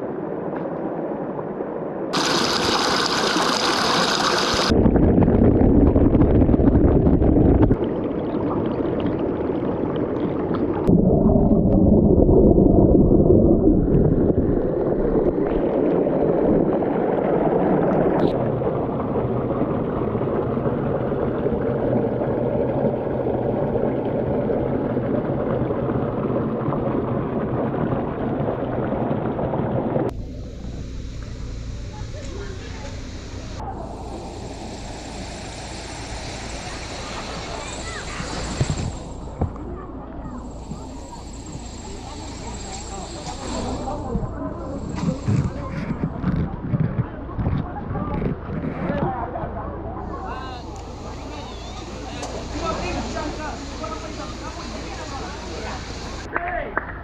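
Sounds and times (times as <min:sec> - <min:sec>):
stream rushing over rocks: 0:02.1 - 0:04.7, 0:33.8 - 0:39.4.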